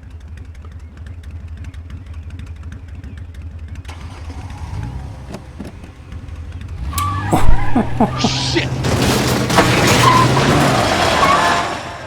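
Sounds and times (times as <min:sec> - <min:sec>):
engine rumbling: 0:00.8 - 0:12.0.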